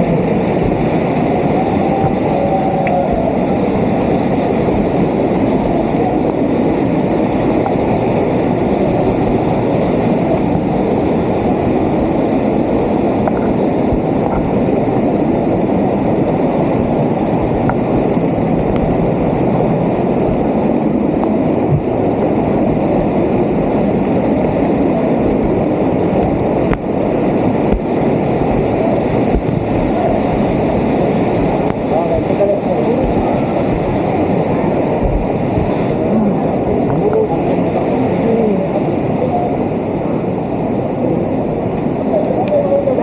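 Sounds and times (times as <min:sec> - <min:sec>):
waterfall roaring: 0:00.0 - 0:43.0.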